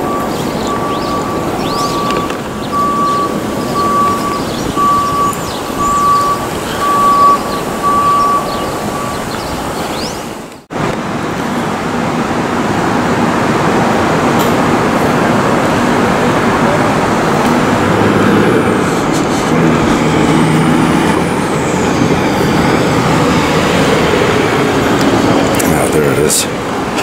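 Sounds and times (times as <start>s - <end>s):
reversing alarm beeping: 0.0s - 10.2s
city traffic noise: 0.0s - 27.0s
engine hum: 0.0s - 27.0s.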